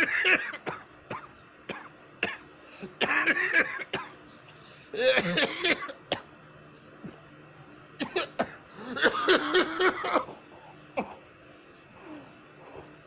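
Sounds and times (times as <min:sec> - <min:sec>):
person coughing: 0:05.0 - 0:06.0.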